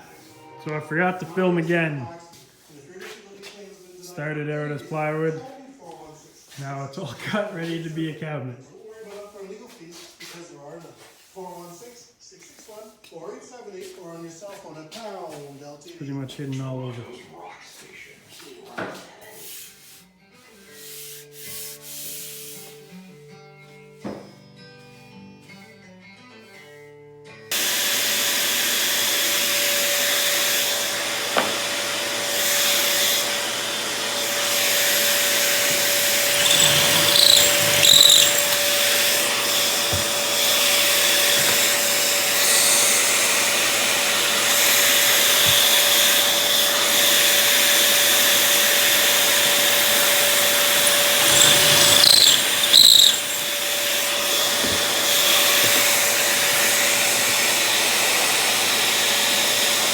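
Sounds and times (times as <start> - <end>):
electric motor whining: 32.6 - 56.8.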